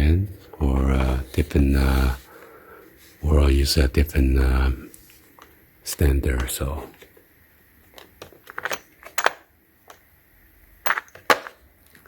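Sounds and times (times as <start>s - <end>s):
metal tool pieces clicking: 8.0s - 9.4s.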